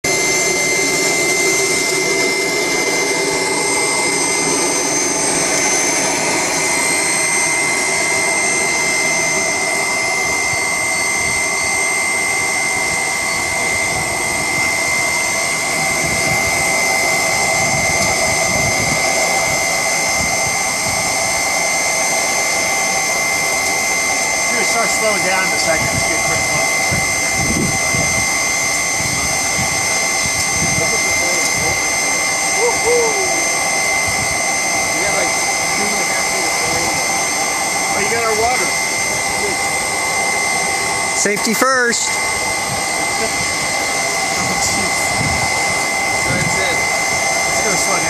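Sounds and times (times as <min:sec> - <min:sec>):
furnace air blower whining: 0:00.0 - 0:48.0.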